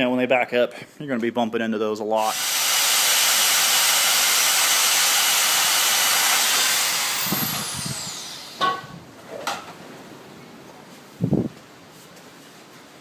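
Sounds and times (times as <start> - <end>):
power tool hissing: 2.2 - 9.0
tool spinning down whine: 2.2 - 9.0.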